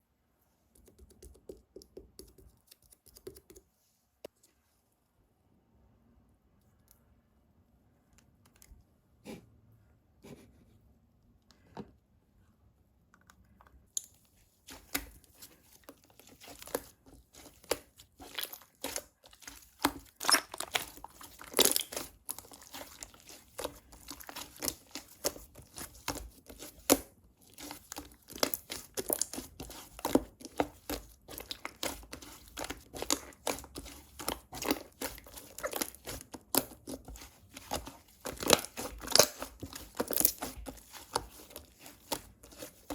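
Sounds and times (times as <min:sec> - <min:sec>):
slime crackling and popping: 0:16.2 - 0:42.9.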